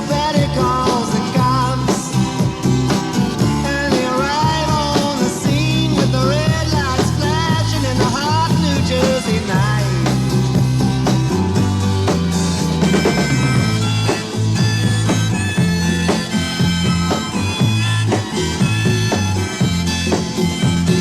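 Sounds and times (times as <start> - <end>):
folk-rock band playing: 0.0 - 21.0.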